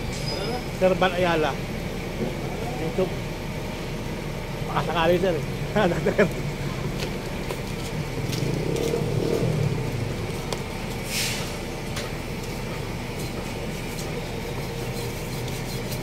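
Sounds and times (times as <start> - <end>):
steady low hum: 0.0 - 16.0
vehicle engine passing: 7.6 - 11.9
short hiss: 11.0 - 11.6.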